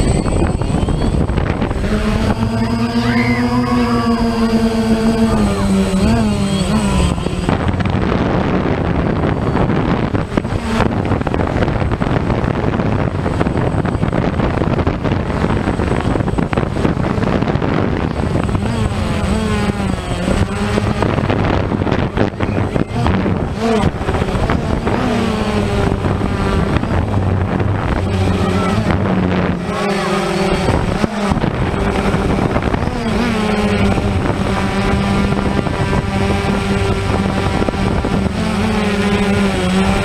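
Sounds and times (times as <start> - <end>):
drone propellers buzzing: 0.0 - 40.0
wind on microphone: 0.0 - 40.0.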